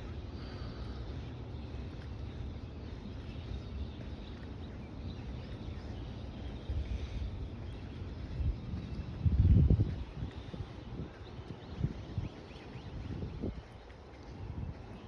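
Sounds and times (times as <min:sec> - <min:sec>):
wind rumble on microphone: 0:00.0 - 0:15.0.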